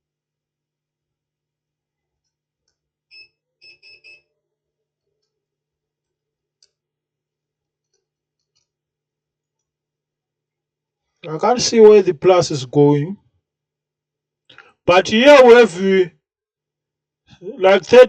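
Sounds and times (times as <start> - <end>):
multimeter continuity beeps: 3.1 - 4.3.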